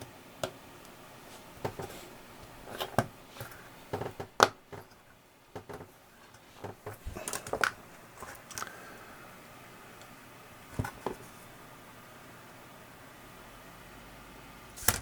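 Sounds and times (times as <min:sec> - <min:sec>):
clicks and knocks of tools handled: 0:05.6 - 0:08.7.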